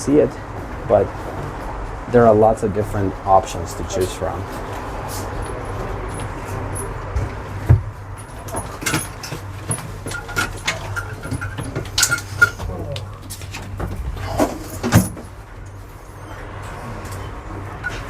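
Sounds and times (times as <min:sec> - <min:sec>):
vehicle engine idling: 0:00.0 - 0:11.5
knocks clacks and rattles: 0:00.0 - 0:15.8.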